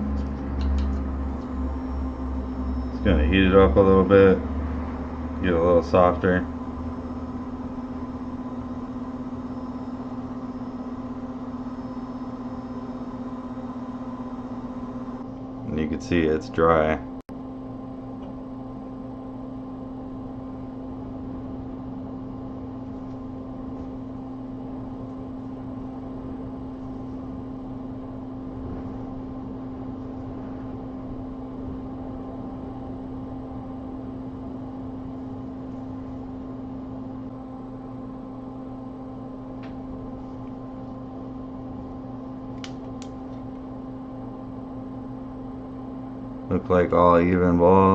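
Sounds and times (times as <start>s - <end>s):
hot air station blowing: 0.0s - 16.7s, 19.8s - 43.2s.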